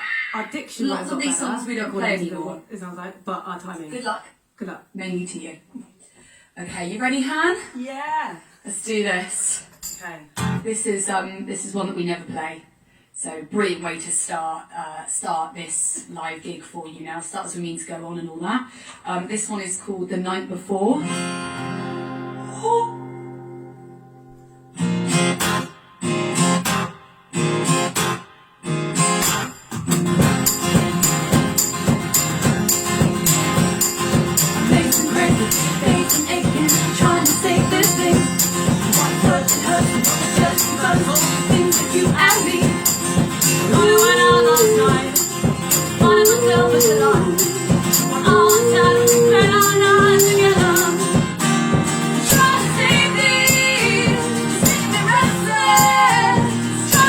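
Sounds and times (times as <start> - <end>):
percussion beat: 9.7 - 10.2, 29.2 - 57.0
acoustic guitar strumming: 9.8 - 10.6, 21.1 - 57.0.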